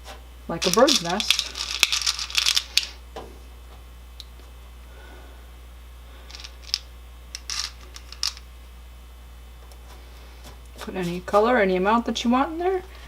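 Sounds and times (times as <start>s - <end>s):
steady low hum: 0.0s - 13.0s
light clicks of jelly beans: 0.6s - 3.0s, 6.3s - 8.4s.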